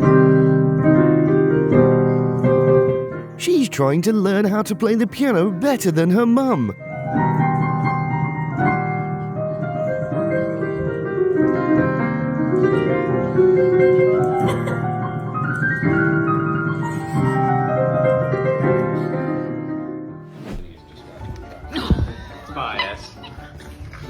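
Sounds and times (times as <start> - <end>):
piano melody: 2.5 - 8.6.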